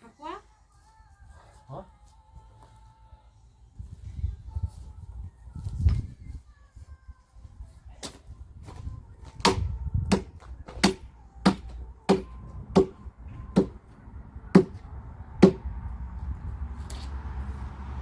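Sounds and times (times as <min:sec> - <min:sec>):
axe chopping firewood: 0:09.2 - 0:13.8, 0:14.5 - 0:15.7.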